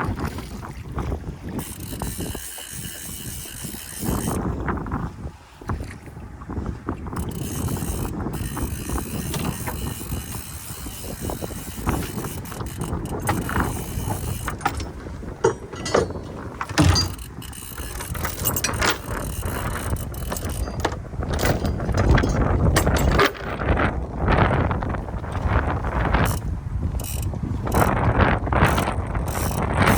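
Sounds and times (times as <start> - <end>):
wind rumbling on microphone: 0.0 - 29.9
clicks and knocks of gear: 7.1 - 23.8.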